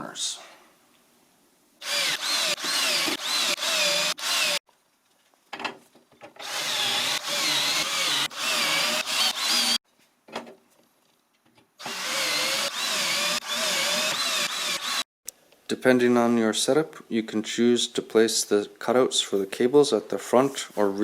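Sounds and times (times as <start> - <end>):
power drill driving screws: 1.8 - 4.6, 6.4 - 9.8, 11.8 - 15.1.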